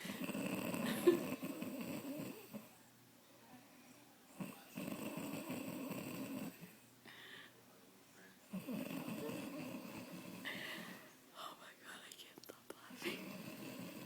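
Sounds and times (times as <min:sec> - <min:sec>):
woman snoring loudly: 0:00.0 - 0:02.5, 0:13.0 - 0:14.0.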